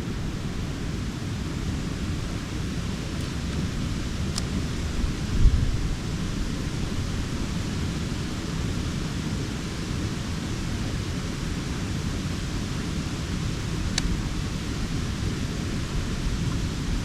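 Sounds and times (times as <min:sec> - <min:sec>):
wind buffeting microphone: 0:00.0 - 0:08.6.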